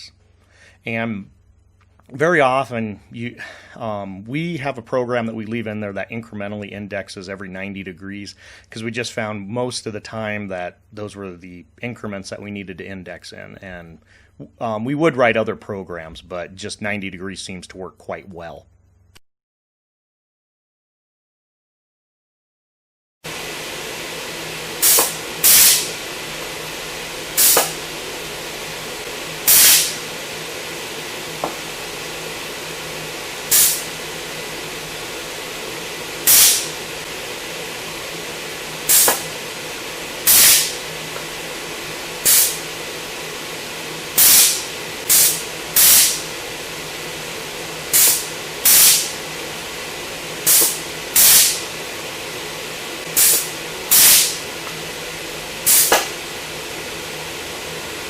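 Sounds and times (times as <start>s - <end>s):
machine hum: 0.0s - 7.0s, 23.3s - 58.0s
hissing air blasts: 23.3s - 58.0s.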